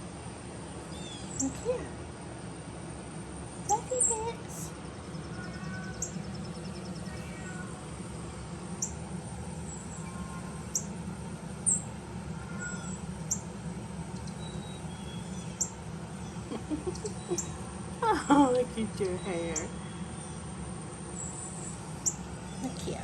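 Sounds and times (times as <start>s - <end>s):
steady low hum: 0.0s - 23.0s
kittens mewing and squeaking: 3.7s - 7.8s, 9.8s - 10.9s, 11.7s - 13.4s, 14.3s - 17.7s.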